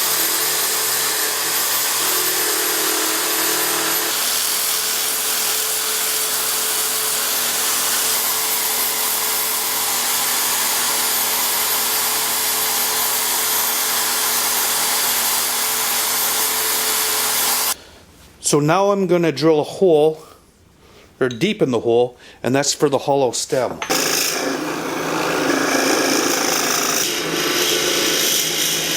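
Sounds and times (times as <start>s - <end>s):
wood lathe running: 0.0s - 17.8s, 23.8s - 28.9s.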